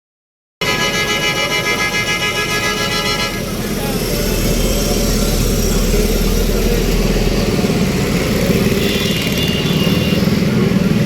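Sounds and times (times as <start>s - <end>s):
motorcycle and car engines rumbling: 0.8s - 11.0s.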